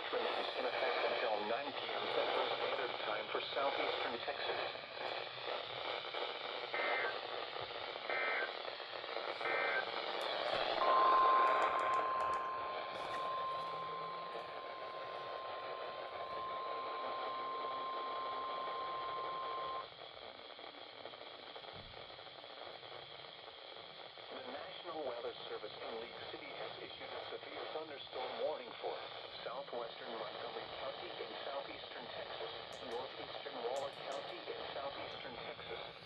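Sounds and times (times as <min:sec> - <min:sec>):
radio hiss: 0:00.0 - 0:36.0
digital data tone bursts: 0:09.7 - 0:19.8.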